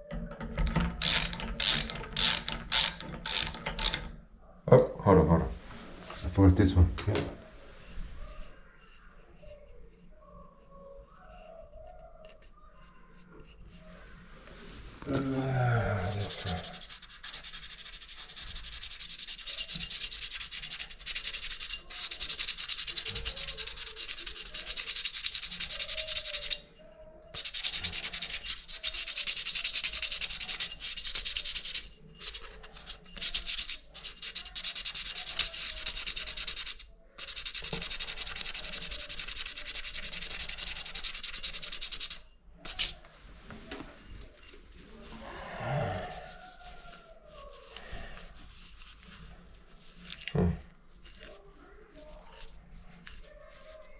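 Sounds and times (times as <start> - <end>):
abrasive rubbing: 14.6 - 26.6.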